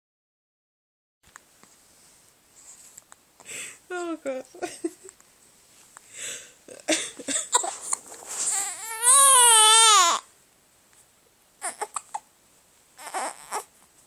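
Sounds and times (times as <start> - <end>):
baby crying: 7.5 - 10.3, 11.6 - 12.3, 13.0 - 13.7.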